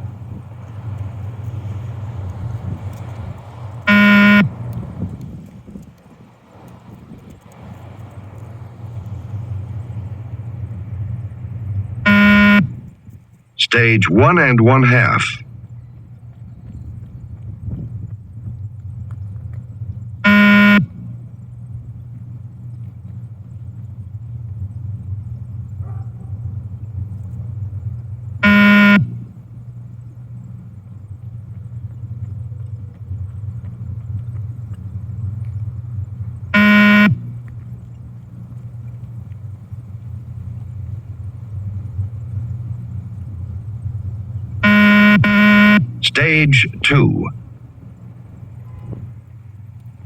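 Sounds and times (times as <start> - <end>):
steady low hum: 0.0 - 50.0
electronic beeps: 3.9 - 4.5, 12.1 - 12.7, 44.6 - 47.2.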